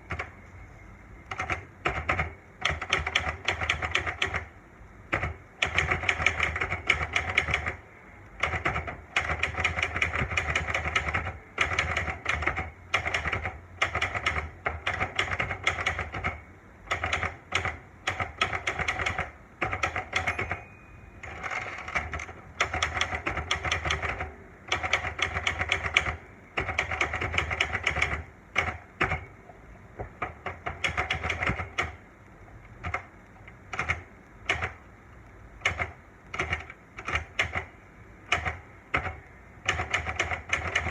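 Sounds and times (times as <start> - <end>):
typewriter key strikes: 8.4 - 29.3, 38.3 - 40.9
typewriter bell ringing: 20.1 - 22.0.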